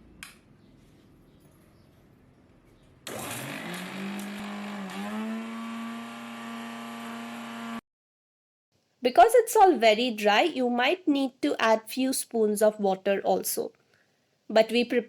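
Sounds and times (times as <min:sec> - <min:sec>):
mixer grinder motor whining: 0:03.1 - 0:07.8.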